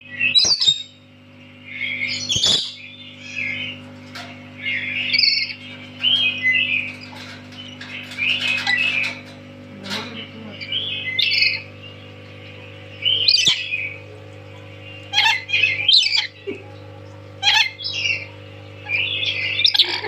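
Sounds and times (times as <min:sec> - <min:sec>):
parrot squawking and chirping: 0:00.2 - 0:01.0, 0:01.8 - 0:03.9, 0:04.6 - 0:09.4, 0:10.6 - 0:11.7, 0:13.0 - 0:14.0, 0:15.1 - 0:16.5, 0:17.4 - 0:20.0.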